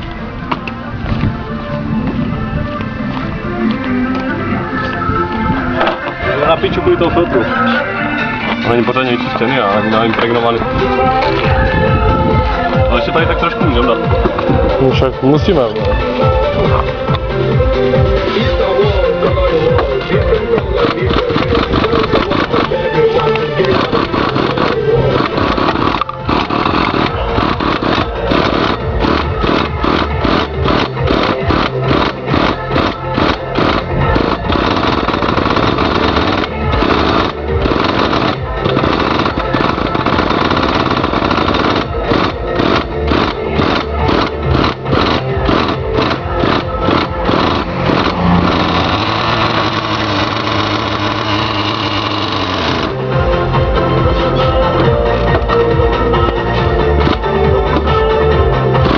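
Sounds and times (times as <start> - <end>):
moped engine pulsing: 3.9 - 58.9.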